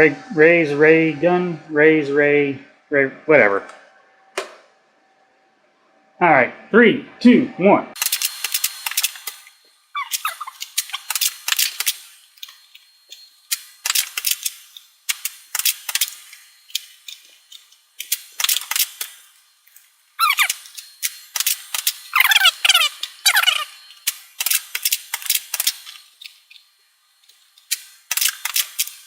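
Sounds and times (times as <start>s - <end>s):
squeaky plunger sliding: 10.0s - 13.2s, 20.2s - 20.8s, 21.4s - 24.0s.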